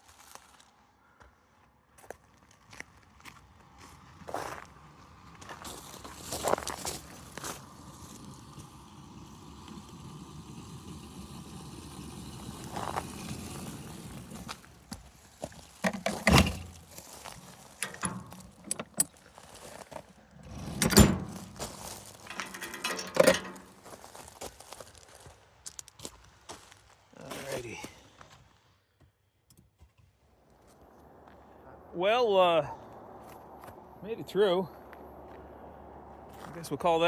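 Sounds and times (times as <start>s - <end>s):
electric locomotive motor hum: 4.9s - 15.2s, 15.9s - 19.1s, 20.2s - 23.8s, 30.5s - 36.6s.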